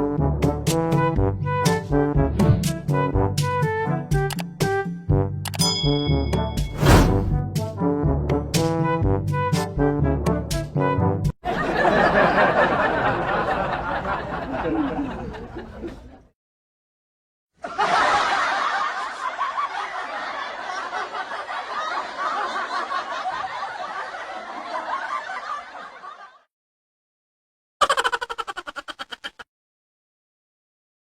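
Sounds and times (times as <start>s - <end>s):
laughter: 11.4s - 16.3s, 17.6s - 26.5s, 27.8s - 29.5s.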